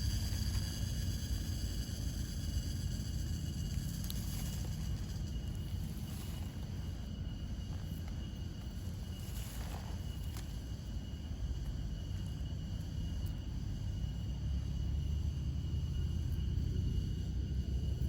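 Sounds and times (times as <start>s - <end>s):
crickets trilling: 0.0s - 18.0s.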